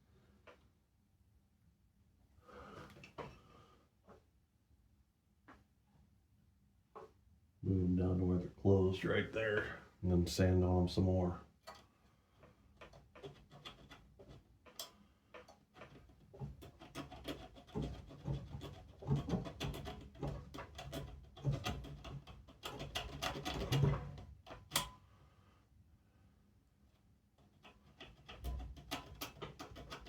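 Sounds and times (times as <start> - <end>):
small knocks: 11.7 - 24.9
file rasping on metal: 13.2 - 14.4, 16.5 - 22.0.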